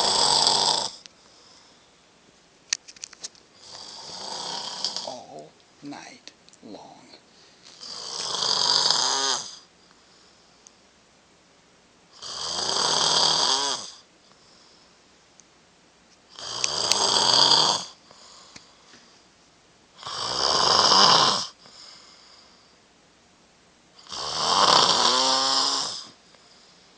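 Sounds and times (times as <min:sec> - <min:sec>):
person snoring heavily: 0:00.0 - 0:01.0, 0:03.6 - 0:06.1, 0:07.8 - 0:09.7, 0:12.2 - 0:14.1, 0:16.3 - 0:18.4, 0:20.0 - 0:21.6, 0:24.0 - 0:26.2.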